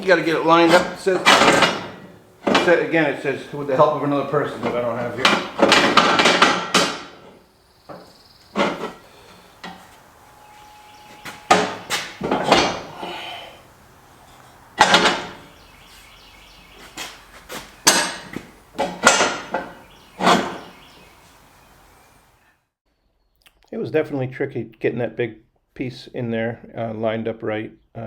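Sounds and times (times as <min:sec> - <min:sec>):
heavy steel parts knocking: 0:00.0 - 0:21.4.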